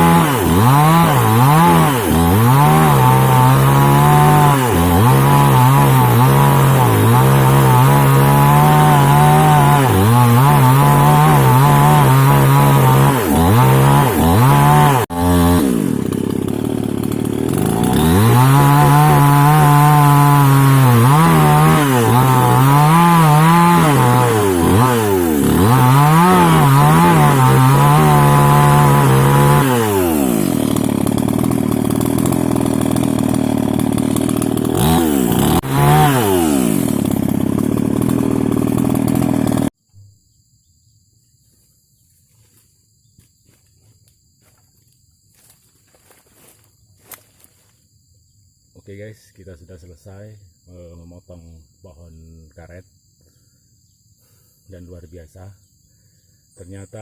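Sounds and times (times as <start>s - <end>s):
chainsaw cutting wood: 0.0s - 39.8s, 43.5s - 47.8s.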